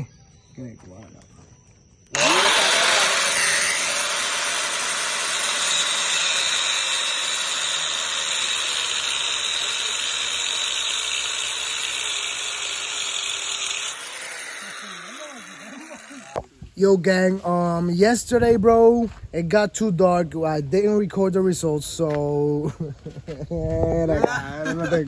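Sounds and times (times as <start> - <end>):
angle grinder cutting steel: 2.1 - 16.6, 24.2 - 25.0.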